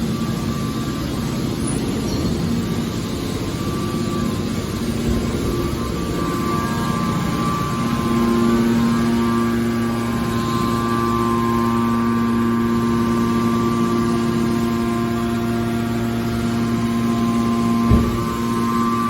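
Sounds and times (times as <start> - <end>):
hydraulic press baler humming: 0.0 - 19.0
dull thump: 17.9 - 18.6.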